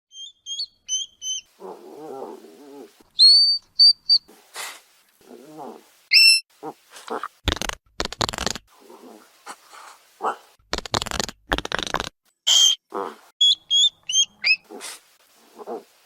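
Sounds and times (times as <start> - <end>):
hedgehog squeaking: 0.1 - 1.5, 3.1 - 4.3, 6.1 - 6.4, 12.5 - 14.8
hedgehog grunting: 12.9 - 13.3
hedgehog huffing: 14.4 - 15.9.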